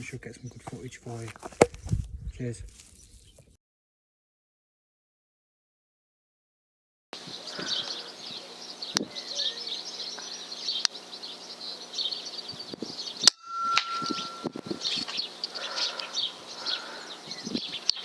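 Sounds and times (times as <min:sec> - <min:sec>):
birdsong: 0:00.0 - 0:03.6, 0:07.2 - 0:18.0
high tone: 0:13.2 - 0:15.3.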